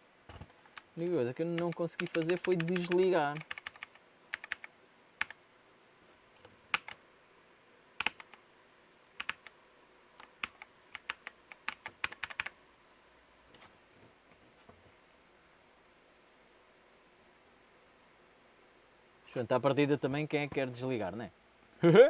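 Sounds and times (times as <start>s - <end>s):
mechanical keyboard key clicks: 1.6s - 4.7s.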